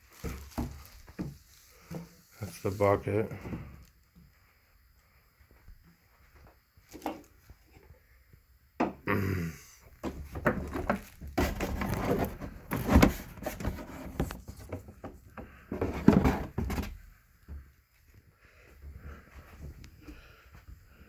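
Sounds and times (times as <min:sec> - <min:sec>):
plastic packaging rustling: 0:10.0 - 0:14.7.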